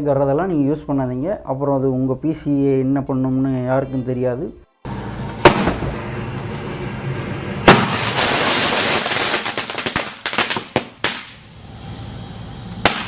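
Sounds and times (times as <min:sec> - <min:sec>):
fireworks bangs and crackling: 0:04.9 - 0:06.9, 0:07.6 - 0:11.8, 0:12.7 - 0:13.0.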